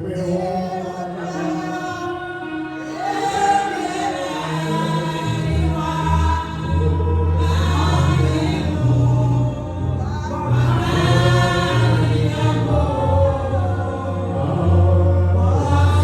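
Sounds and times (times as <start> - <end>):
choir singing gospel song: 0.0 - 16.0
deep low notes: 5.2 - 16.0.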